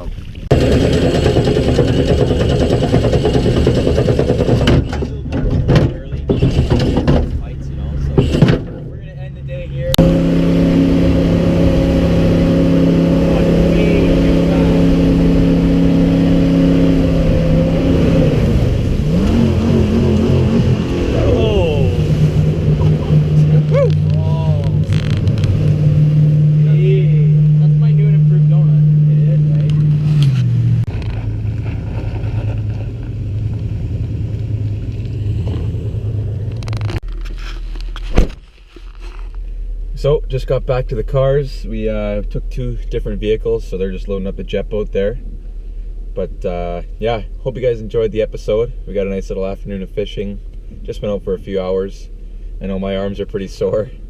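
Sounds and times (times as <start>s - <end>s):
low hum: 0.1s - 54.0s
jet boat engine running: 0.5s - 5.3s, 6.1s - 37.0s.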